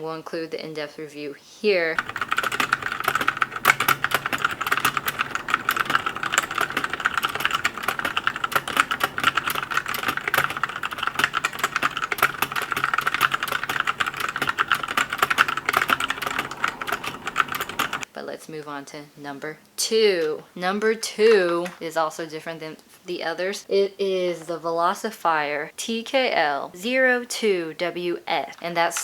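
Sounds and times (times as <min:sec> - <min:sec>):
mechanical keyboard typing: 0:02.0 - 0:18.0.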